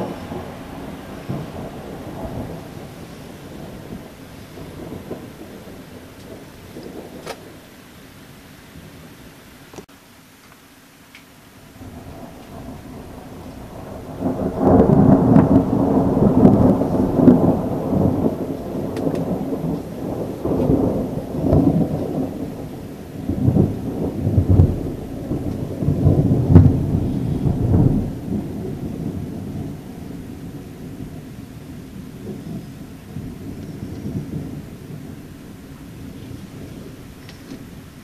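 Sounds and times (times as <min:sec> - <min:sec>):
rolling thunder: 0:00.0 - 0:07.8, 0:11.7 - 0:38.0.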